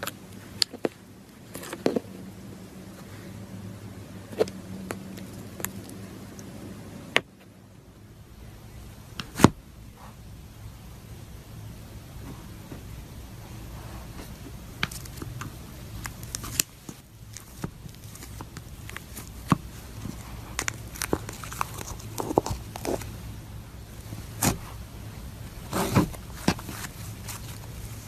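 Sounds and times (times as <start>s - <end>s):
low steady hum: 0.0s - 28.0s
crunchy slime crackling: 14.0s - 28.0s.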